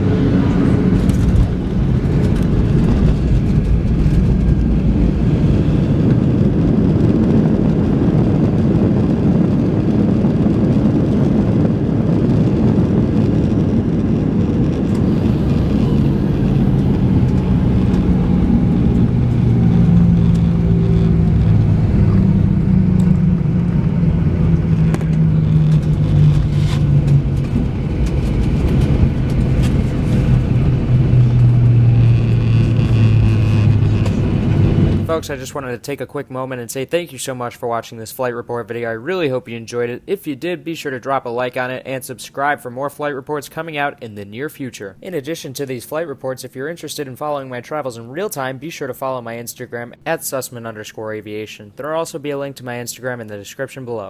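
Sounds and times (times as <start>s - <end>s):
engines winding down hum: 0.0s - 9.1s, 12.2s - 35.7s
airplane engines and wheels rumbling: 0.0s - 36.1s.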